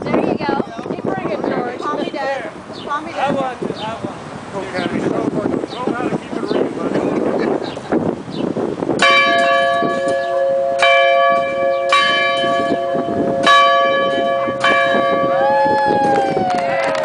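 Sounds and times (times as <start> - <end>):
large bell ringing: 9.0 - 15.5.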